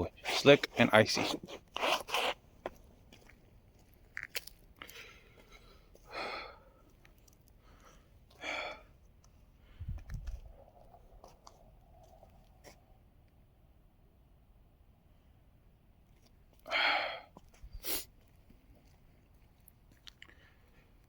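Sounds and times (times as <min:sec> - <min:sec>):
person breathing out heavily: 0:04.8 - 0:06.9, 0:07.6 - 0:09.0, 0:16.6 - 0:18.1
microphone handling rumble: 0:09.7 - 0:12.8.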